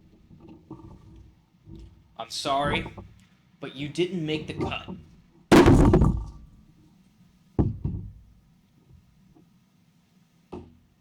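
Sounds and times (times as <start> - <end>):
hard knocks: 5.5 - 6.6.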